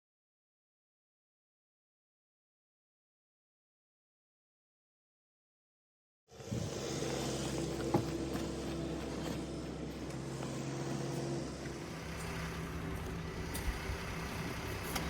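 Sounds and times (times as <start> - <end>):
car engine running: 6.4 - 15.0.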